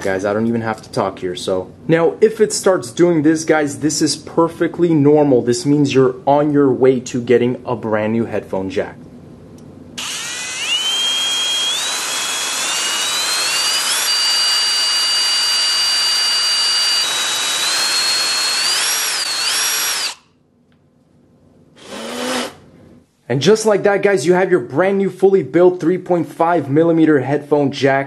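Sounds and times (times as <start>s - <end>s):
power drill whining: 10.0s - 20.2s, 21.8s - 22.6s.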